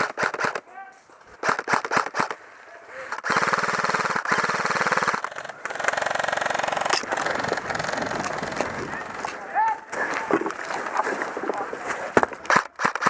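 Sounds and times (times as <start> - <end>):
airsoft gun firing bursts: 0.0 - 0.6, 1.4 - 2.4, 3.2 - 9.2, 12.5 - 13.0.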